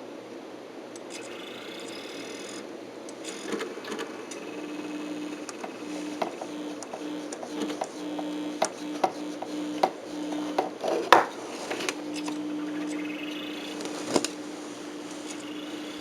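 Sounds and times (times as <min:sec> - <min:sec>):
scattered clicks: 0:03.1 - 0:10.8.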